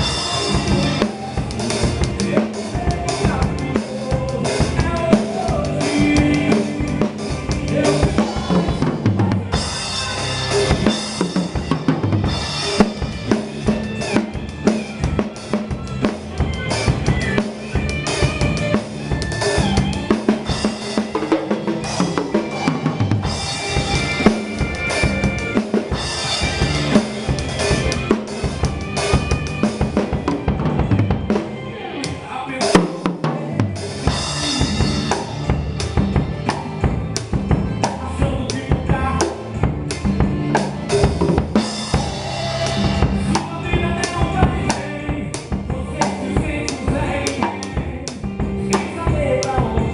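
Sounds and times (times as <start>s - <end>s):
drum kit bass drum and snare: 0.0s - 49.9s
gospel music: 0.0s - 49.9s.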